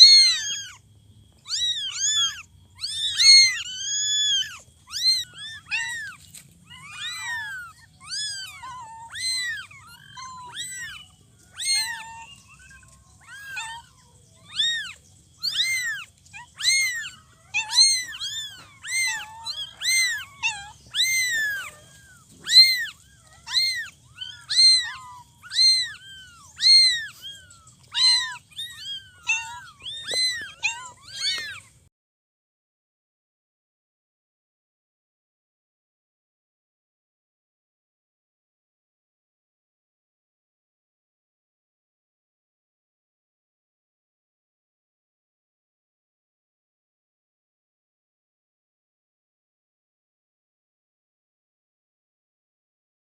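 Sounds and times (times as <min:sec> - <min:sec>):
cat meowing: 0:00.0 - 0:00.8, 0:01.4 - 0:31.7.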